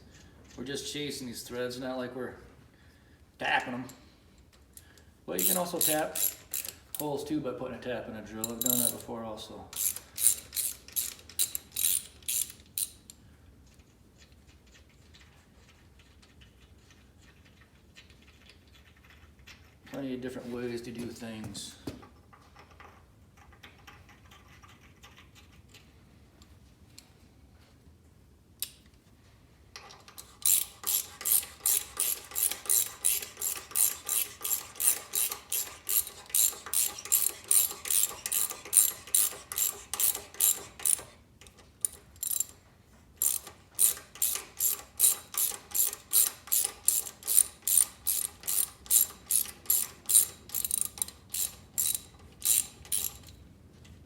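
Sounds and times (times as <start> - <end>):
ratchet clicking: 4.8 - 7.1, 8.4 - 9.1, 9.7 - 13.2, 29.8 - 42.6, 43.2 - 53.4.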